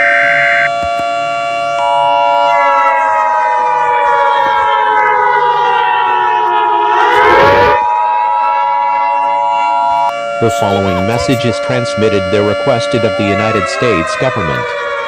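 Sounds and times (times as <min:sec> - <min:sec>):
civil defense siren wailing: 0:00.0 - 0:15.0
steady high alert tone: 0:05.2 - 0:15.0.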